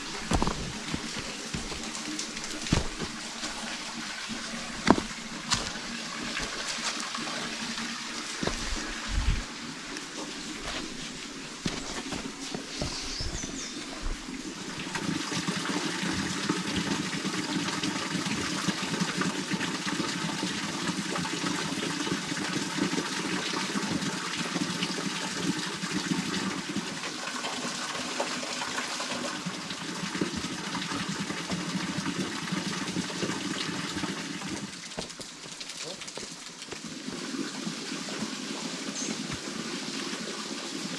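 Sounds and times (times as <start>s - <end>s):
water rushing: 0.0s - 18.9s.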